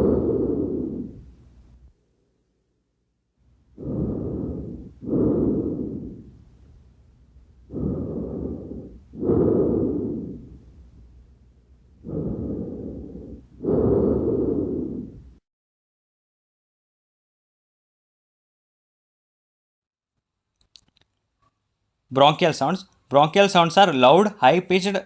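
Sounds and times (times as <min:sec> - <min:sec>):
breathing airflow: 0:00.0 - 0:01.5, 0:03.7 - 0:06.9, 0:07.5 - 0:11.1, 0:12.0 - 0:15.4.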